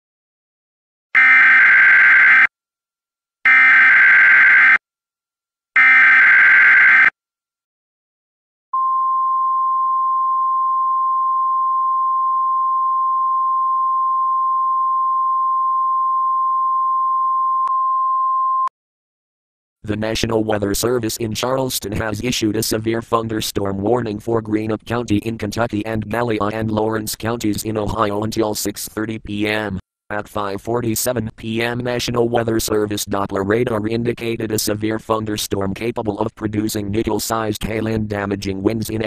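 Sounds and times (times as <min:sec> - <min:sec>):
long steady alert tone: 0:01.2 - 0:02.5, 0:03.5 - 0:04.8, 0:05.8 - 0:07.1.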